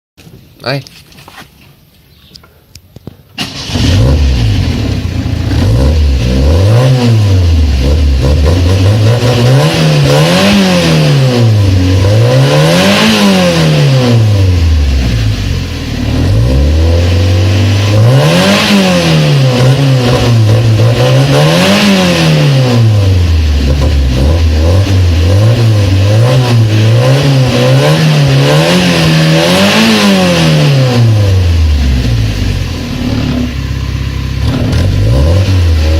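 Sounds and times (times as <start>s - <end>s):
car engine starting: 3.3s - 35.9s
car engine idling and revving: 3.4s - 35.9s.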